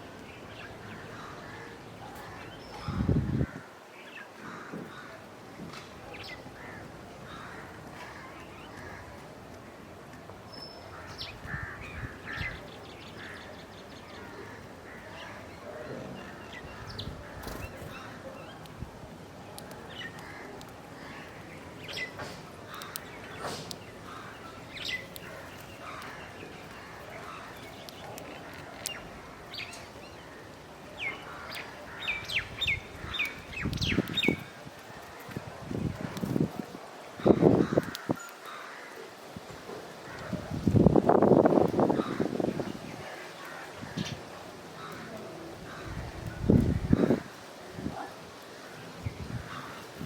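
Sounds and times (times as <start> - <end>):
birds chirping: 10.4 - 50.0.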